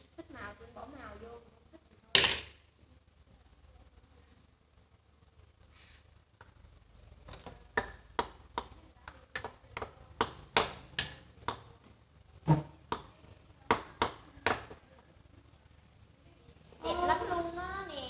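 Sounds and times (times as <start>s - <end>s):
hard objects clicking and knocking: 2.2s - 2.6s, 7.2s - 14.9s.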